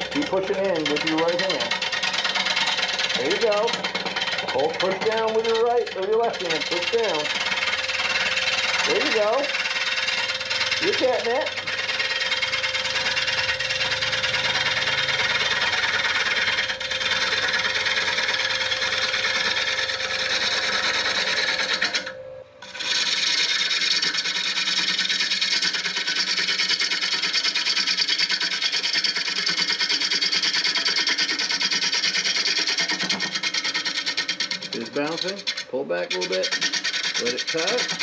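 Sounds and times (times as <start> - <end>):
gouge scraping wood on lathe: 0.0 - 38.0
lathe hum: 0.0 - 38.0.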